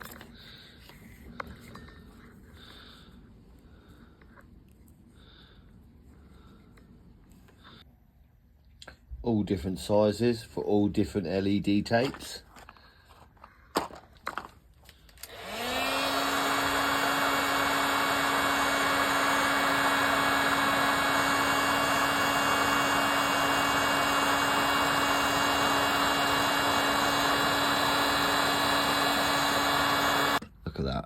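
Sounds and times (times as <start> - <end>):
heat gun blowing hum with whine: 15.2 - 30.4.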